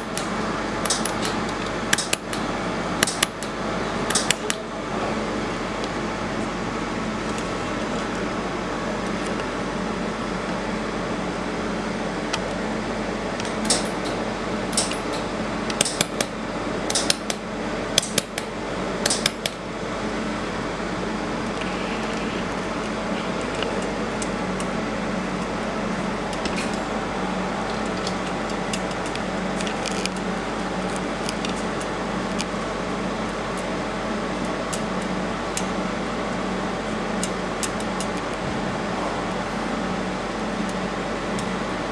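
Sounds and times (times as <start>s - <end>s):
cooling fan humming: 0.0s - 41.9s
sharp clicks: 16.9s - 17.4s.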